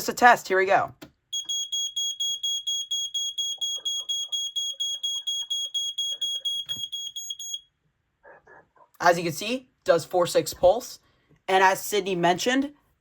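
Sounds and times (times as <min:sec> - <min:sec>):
smoke alarm shrill beeping: 0:01.3 - 0:07.7.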